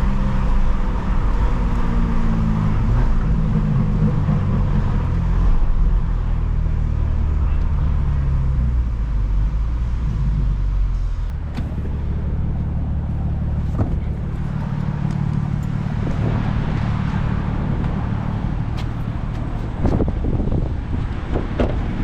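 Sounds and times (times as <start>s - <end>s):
car engine running: 0.0s - 22.0s.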